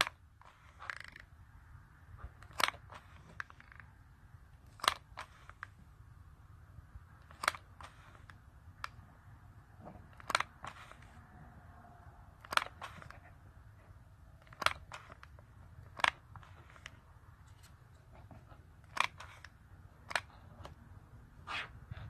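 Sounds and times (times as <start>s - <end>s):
low steady hum: 0.0s - 22.0s
hard objects clicking and knocking: 2.2s - 4.0s, 9.8s - 11.2s, 12.4s - 13.3s, 14.4s - 20.8s.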